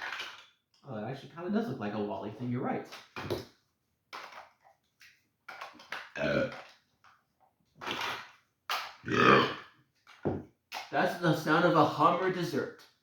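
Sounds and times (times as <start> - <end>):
person burping: 6.2 - 6.6, 9.0 - 9.8.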